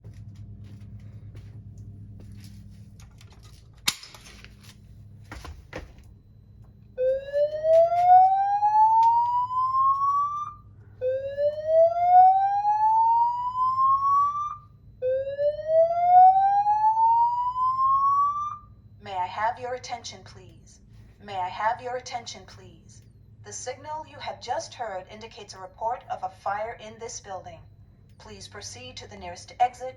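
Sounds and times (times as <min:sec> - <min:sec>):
low hum: 0:00.0 - 0:29.9
fire alarm whoop signal: 0:07.0 - 0:18.8.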